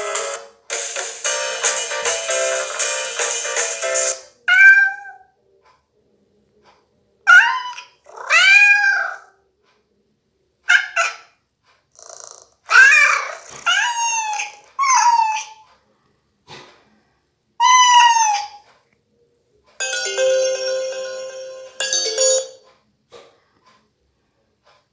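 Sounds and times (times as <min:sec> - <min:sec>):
cat meow ringtone: 0:04.5 - 0:05.2, 0:19.8 - 0:22.6.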